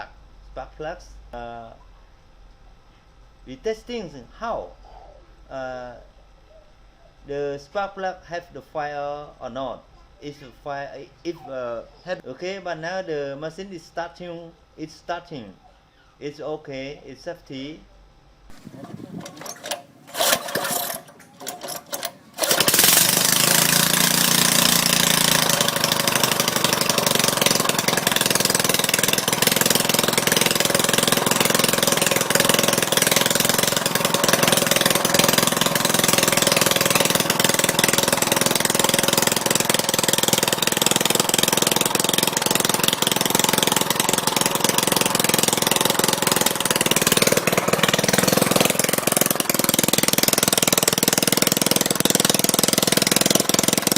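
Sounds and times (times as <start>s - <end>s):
small gasoline engine starting: 18.5s - 53.9s.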